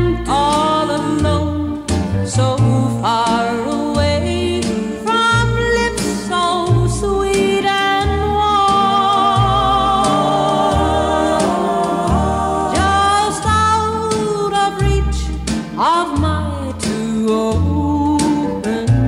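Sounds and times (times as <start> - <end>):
steady bass line: 6.7 - 15.6.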